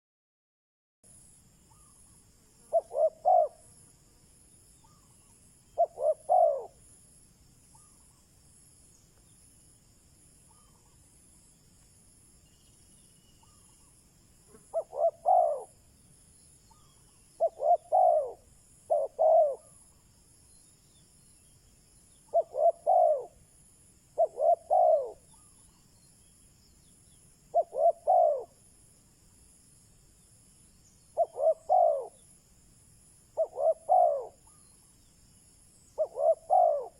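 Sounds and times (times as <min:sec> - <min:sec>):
dove cooing: 0:02.7 - 0:03.7, 0:05.8 - 0:06.8, 0:14.5 - 0:15.8, 0:16.8 - 0:19.8, 0:22.3 - 0:23.4, 0:24.2 - 0:25.4, 0:27.5 - 0:28.6, 0:31.2 - 0:32.2, 0:33.4 - 0:34.6, 0:36.0 - 0:36.9.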